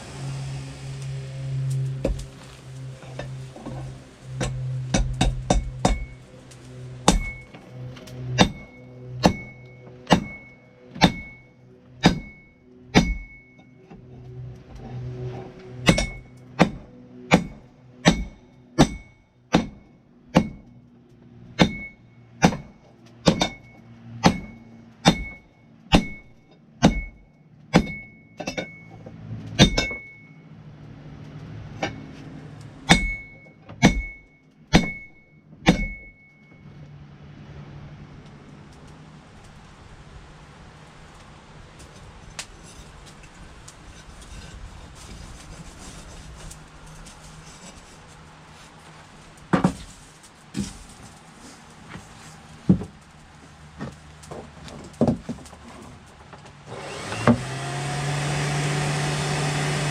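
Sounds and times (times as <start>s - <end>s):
low steady hum: 0.0s - 52.0s
hammer on steel over anvil: 4.4s - 6.2s, 7.1s - 7.6s, 8.4s - 11.4s, 12.0s - 13.6s, 15.8s - 20.7s, 21.6s - 28.9s, 29.6s - 30.2s, 32.9s - 36.2s.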